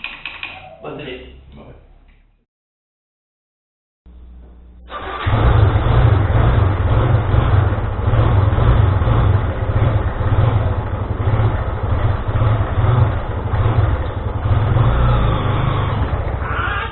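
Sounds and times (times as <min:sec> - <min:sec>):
engine running with throbbing pulse: 0:05.3 - 0:16.9.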